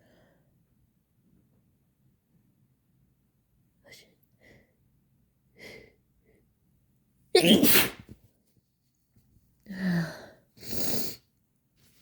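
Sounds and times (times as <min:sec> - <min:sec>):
person sneezing: 0:07.4 - 0:08.1.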